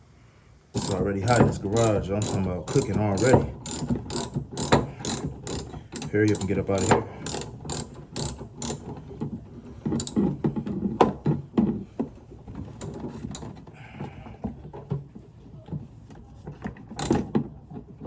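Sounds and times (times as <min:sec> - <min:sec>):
ratchet wrench clicking: 0:00.8 - 0:08.9, 0:09.9 - 0:10.3, 0:17.0 - 0:17.3
tools and metal parts rattling: 0:00.8 - 0:11.8, 0:12.5 - 0:13.7, 0:16.6 - 0:17.5.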